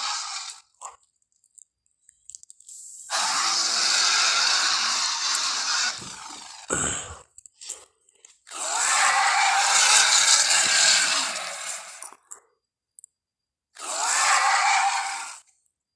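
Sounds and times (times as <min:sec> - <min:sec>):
harsh rasping creature calls: 0:00.0 - 0:01.0, 0:03.1 - 0:07.3, 0:08.5 - 0:12.0, 0:13.8 - 0:15.5.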